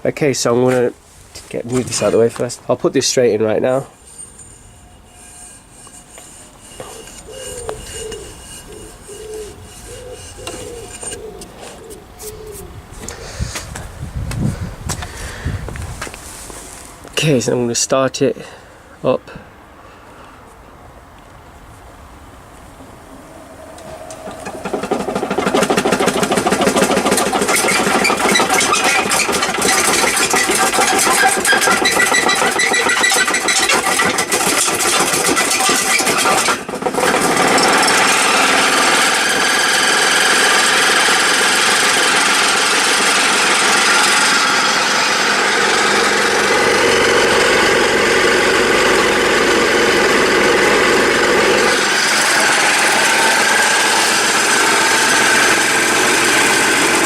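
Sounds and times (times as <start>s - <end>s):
vibrating tumbler rattling: 3.9s - 11.5s, 22.8s - 57.0s.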